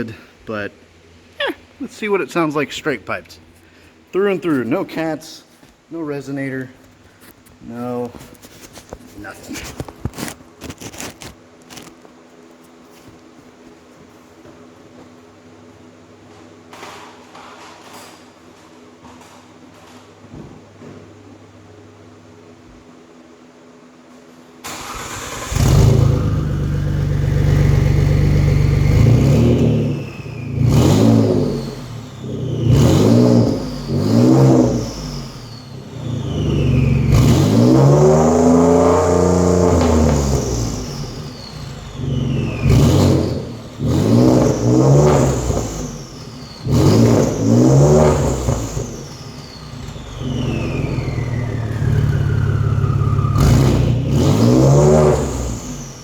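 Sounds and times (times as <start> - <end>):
car engine revving: 24.7 - 56.0.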